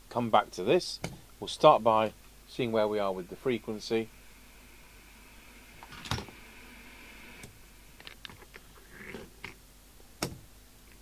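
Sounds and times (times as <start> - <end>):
faint steady high tone: 2.5 - 7.9.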